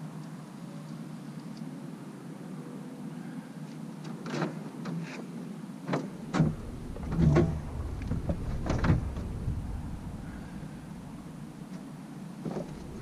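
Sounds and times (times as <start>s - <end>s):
low rumble: 6.2s - 13.0s
steady low hum: 6.2s - 13.0s.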